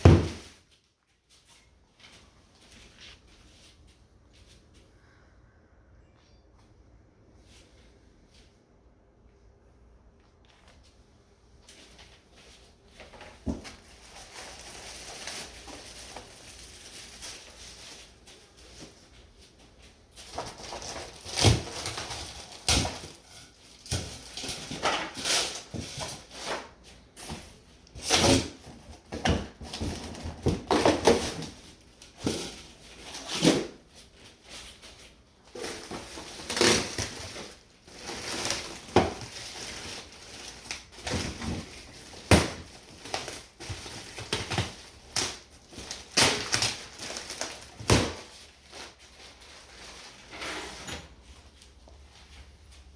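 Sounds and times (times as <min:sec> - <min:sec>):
packaging rustling: 0:11.7 - 0:27.0, 0:27.6 - 0:50.4.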